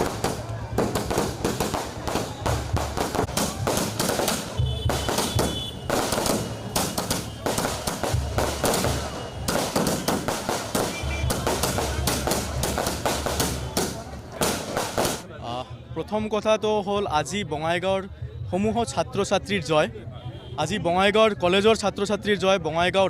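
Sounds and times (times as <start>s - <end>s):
firecrackers crackling: 0.0s - 15.3s.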